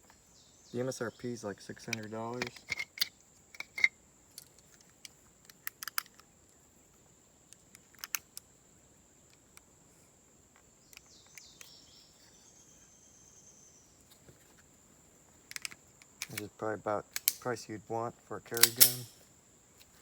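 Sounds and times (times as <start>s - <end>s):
insect drone: 0.0s - 20.0s.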